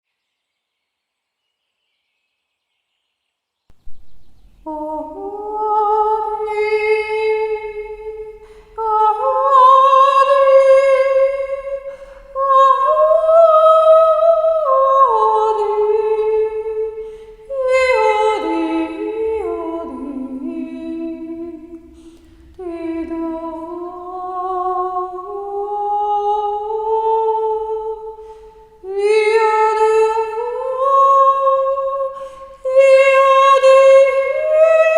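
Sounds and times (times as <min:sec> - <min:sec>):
woman singing wordless long notes: 0:04.6 - 0:34.9
breaths: 0:08.3 - 0:08.8, 0:11.8 - 0:12.4, 0:17.0 - 0:17.5, 0:21.8 - 0:22.6, 0:28.1 - 0:28.8, 0:32.2 - 0:32.7.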